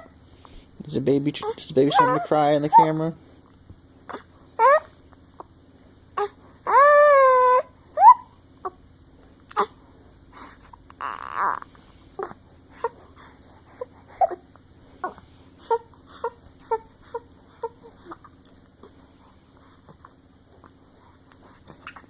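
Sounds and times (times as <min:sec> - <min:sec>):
baby crying: 0:01.4 - 0:02.9, 0:04.1 - 0:04.9, 0:06.2 - 0:08.3, 0:11.0 - 0:12.9.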